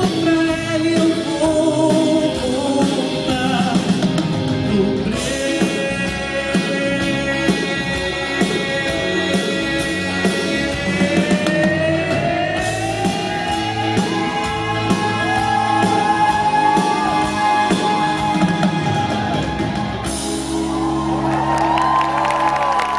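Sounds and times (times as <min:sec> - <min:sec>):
live band playing: 0:00.0 - 0:22.9
crowd cheering: 0:11.0 - 0:22.9.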